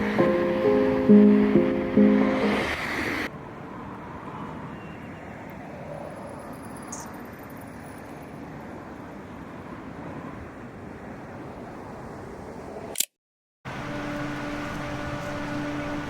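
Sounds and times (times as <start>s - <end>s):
background music: 0.0s - 3.3s, 13.7s - 16.0s
street traffic rumble: 0.0s - 12.9s, 13.7s - 16.0s.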